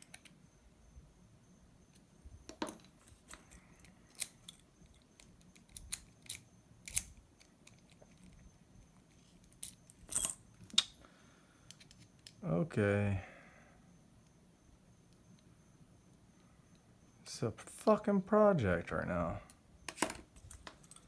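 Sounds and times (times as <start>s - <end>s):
screwdriver clicking on lock parts: 2.5s - 8.4s, 19.9s - 21.0s.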